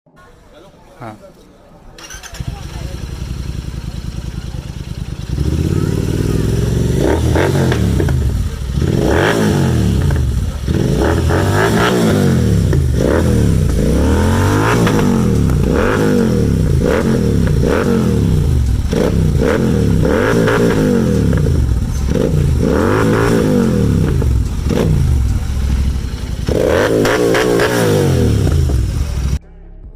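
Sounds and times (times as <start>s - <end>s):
motorcycle engine revving: 2.0s - 29.4s
exhaust crackles and pops: 6.6s - 29.4s.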